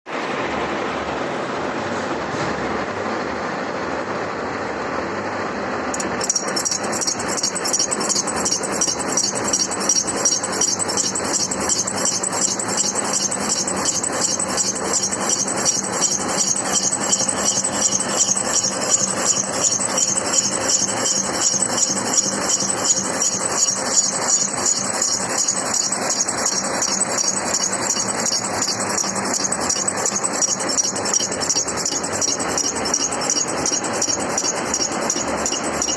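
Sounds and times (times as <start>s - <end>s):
milling machine drive hum: 5.9s - 35.9s
cutter teeth ticking: 6.0s - 22.6s
high ringing: 6.0s - 35.9s.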